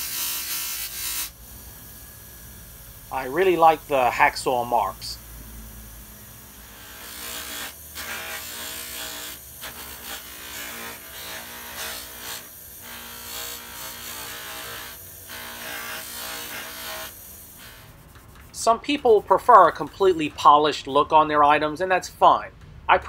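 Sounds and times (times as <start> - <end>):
power tool grinding metal: 0.0 - 18.0.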